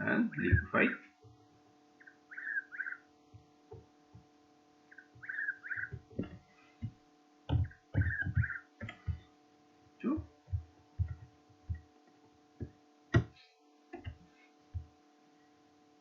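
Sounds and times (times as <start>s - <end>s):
held low tones: 0.0s - 1.0s.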